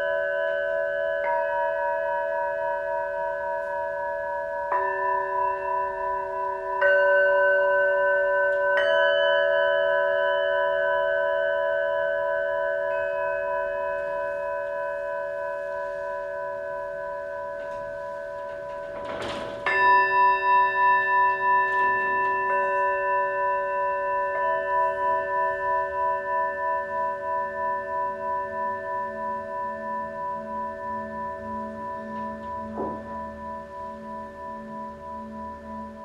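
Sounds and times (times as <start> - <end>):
singing bowls ringing: 0.0 - 36.0
bowl struck with pulsing wobble: 30.4 - 35.9.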